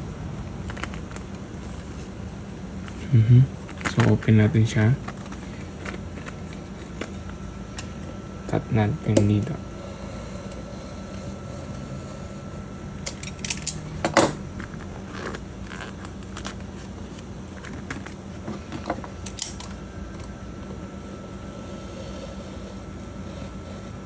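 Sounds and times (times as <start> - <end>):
steady low hum: 0.0 - 24.0
package handling clicks and taps: 5.0 - 7.3.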